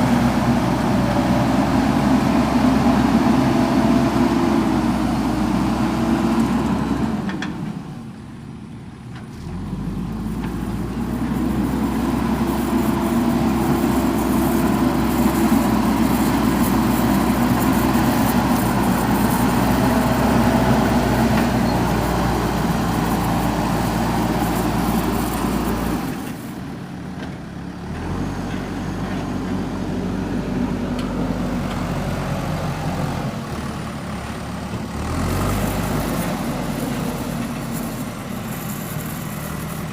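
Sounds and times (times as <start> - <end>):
diesel engine running under load: 0.0 - 39.9.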